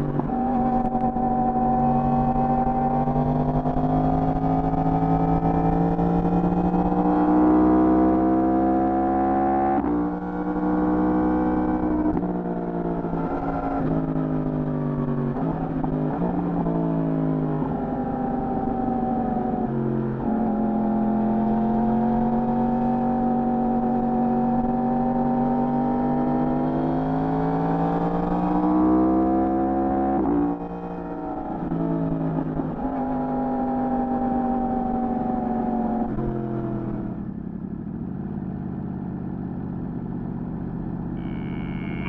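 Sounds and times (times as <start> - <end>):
motorcycle engine revving: 0.0 - 14.4, 41.2 - 42.0.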